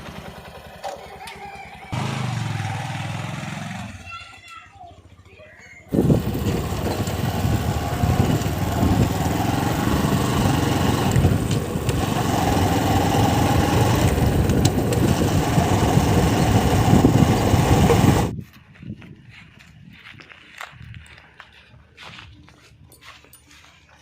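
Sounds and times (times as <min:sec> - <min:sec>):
diesel engine of heavy machinery: 0:00.0 - 0:04.0, 0:05.9 - 0:18.3.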